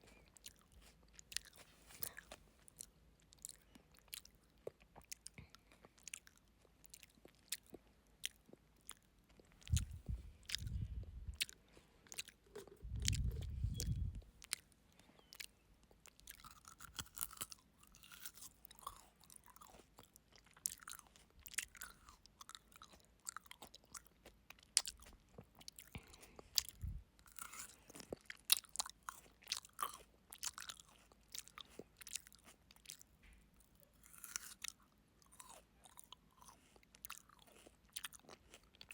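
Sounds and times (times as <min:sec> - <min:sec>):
chewing frozen grapes: 0:00.0 - 0:38.9
wet mouth sounds: 0:06.9 - 0:15.5, 0:24.8 - 0:27.0.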